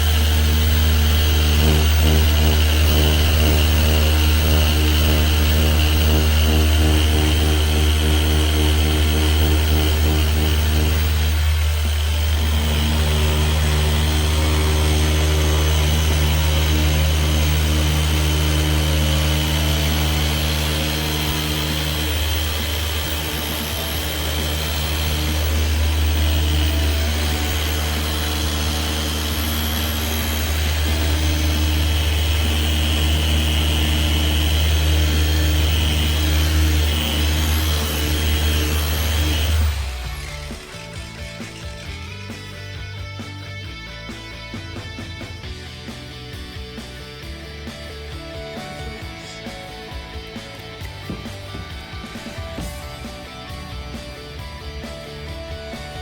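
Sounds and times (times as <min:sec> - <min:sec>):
polisher humming: 0:00.0 - 0:56.0.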